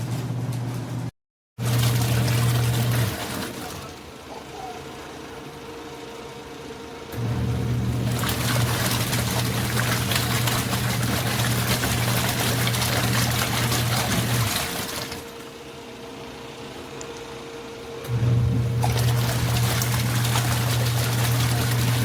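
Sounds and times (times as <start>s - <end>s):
washing machine motor humming: 0.0s - 22.0s
water running in machine: 1.6s - 5.6s, 7.1s - 16.2s, 18.0s - 22.0s.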